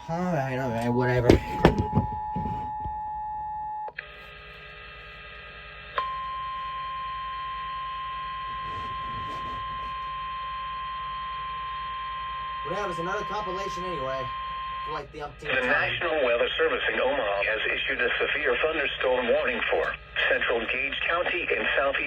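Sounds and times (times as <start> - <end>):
weather radio alert tones: 0.0 - 3.9, 12.6 - 22.0
steady warning alarm tone: 0.0 - 4.0, 6.0 - 17.2.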